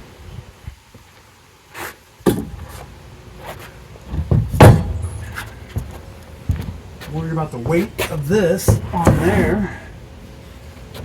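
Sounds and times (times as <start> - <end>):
heavy metal clunks: 4.1 - 9.8.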